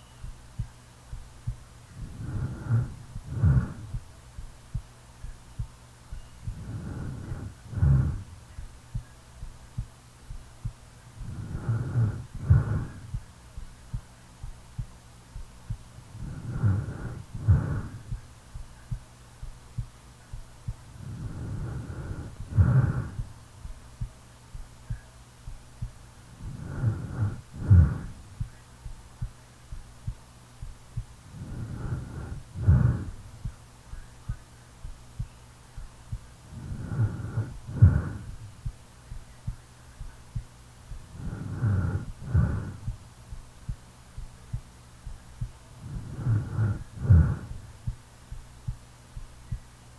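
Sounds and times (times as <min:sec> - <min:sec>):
heartbeat thudding: 0:00.2 - 0:49.7
person snoring: 0:02.0 - 0:03.9, 0:06.5 - 0:08.4, 0:11.2 - 0:13.1, 0:16.1 - 0:18.1, 0:21.0 - 0:23.3, 0:26.4 - 0:28.3, 0:31.3 - 0:33.3, 0:36.5 - 0:38.5, 0:41.1 - 0:42.9, 0:45.8 - 0:47.7.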